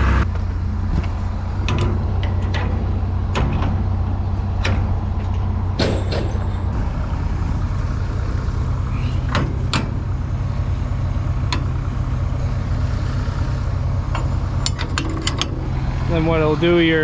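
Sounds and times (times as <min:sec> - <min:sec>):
tractor engine idling: 0:00.0 - 0:17.0
hitching gear knocks: 0:04.6 - 0:06.8.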